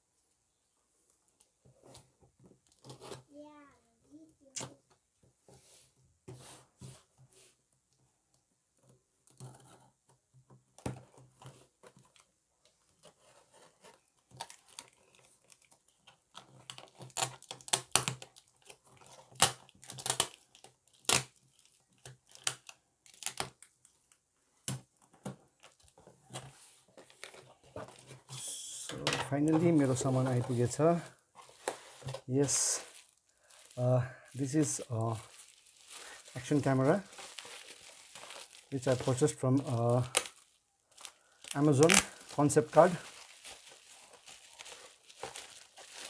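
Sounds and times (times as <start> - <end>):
packaging being torn and crinkled: 14.3 - 24.2, 32.5 - 46.0.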